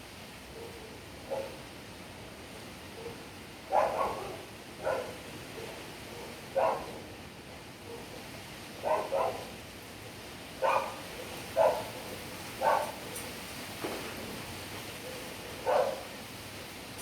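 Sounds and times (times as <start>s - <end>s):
dog barking: 0.6s - 1.6s, 3.0s - 7.0s, 8.8s - 9.5s, 10.6s - 13.0s, 15.0s - 16.1s.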